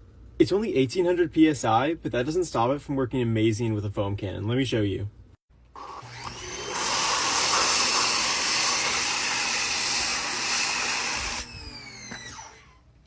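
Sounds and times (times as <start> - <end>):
water spray hissing: 5.8 - 11.5
pressure washer motor whine: 5.8 - 12.8.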